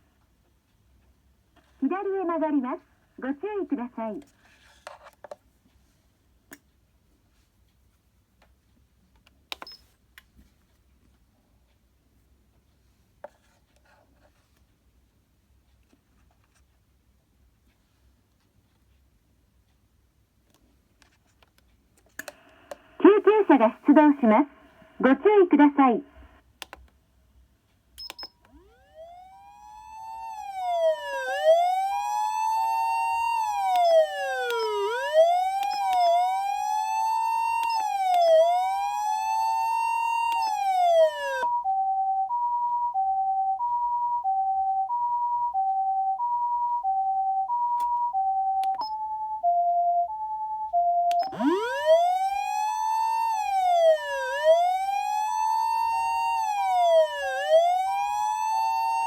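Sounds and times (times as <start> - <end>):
click: 9.2 - 10.3, 20.5 - 22.8, 26.6 - 27.0, 28.0 - 28.6, 37.6 - 38.3, 51.1 - 51.4
two-tone hi-lo ambulance siren: 28.5 - 59.0
wailing siren sweeping up and down: 28.5 - 59.0.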